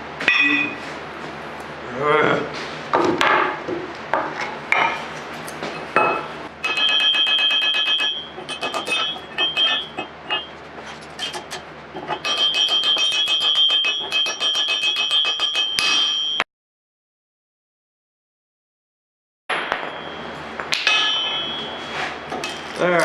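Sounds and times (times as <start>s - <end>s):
hammer striking steel: 0.3s - 0.8s, 6.0s - 10.6s, 11.2s - 16.4s, 19.5s - 22.7s.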